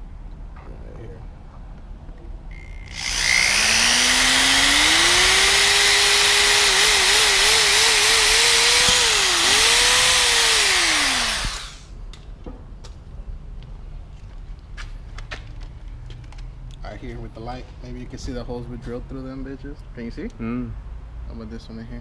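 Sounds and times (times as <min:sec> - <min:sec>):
power drill whining: 0:02.6 - 0:11.9.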